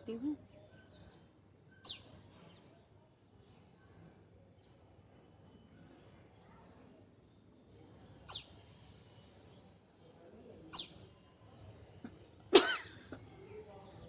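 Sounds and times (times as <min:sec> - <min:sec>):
person coughing: 0:12.6 - 0:13.0.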